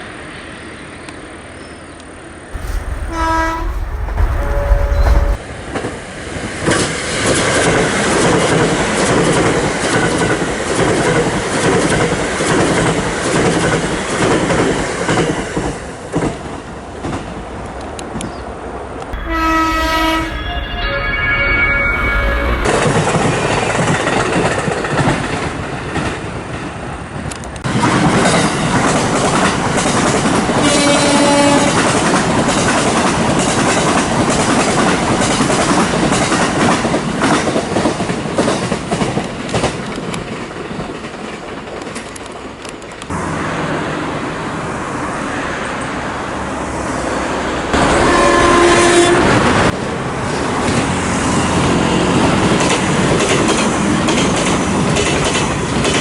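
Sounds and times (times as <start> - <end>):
train warning horn: 2.6 - 5.4, 19.2 - 22.8, 30.6 - 31.9, 47.8 - 49.6
train wheels clattering on rails: 2.6 - 17.9, 19.2 - 43.1, 49.2 - 56.0.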